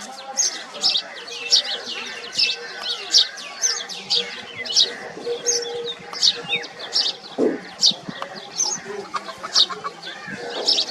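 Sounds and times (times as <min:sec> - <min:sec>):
sparrows chirping: 0:00.0 - 0:10.9.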